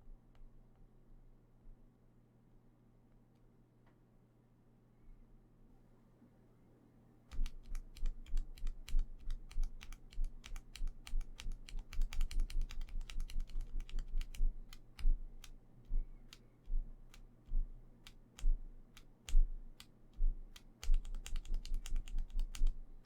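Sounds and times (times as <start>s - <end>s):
mechanical keyboard key clacks: 7.3s - 15.6s, 20.5s - 22.8s.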